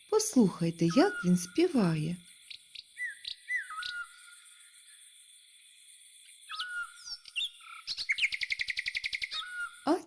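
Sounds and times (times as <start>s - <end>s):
starling singing: 0.3s - 2.2s.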